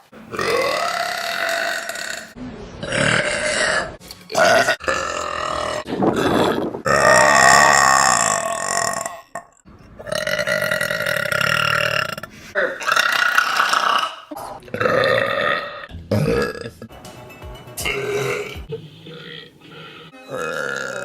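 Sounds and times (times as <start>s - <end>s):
woman burping: 10.2s - 16.9s, 17.8s - 19.5s, 20.3s - 21.0s.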